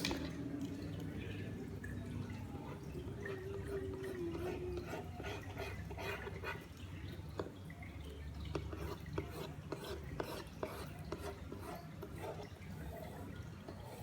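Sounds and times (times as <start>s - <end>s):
pen scratching and tapping: 8.8s - 12.4s.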